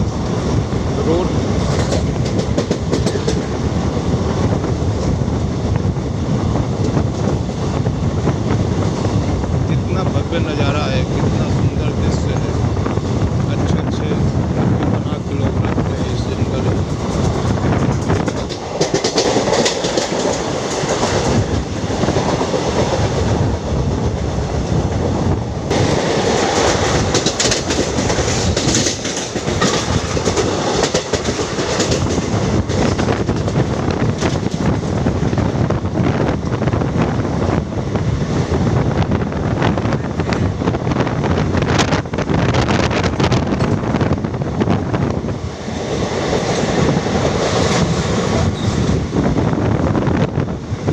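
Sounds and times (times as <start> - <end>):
train wheels rumbling and rattling: 0.0 - 50.9
wheels clicking over rail joints: 1.5 - 3.6, 16.1 - 23.3, 25.7 - 35.5.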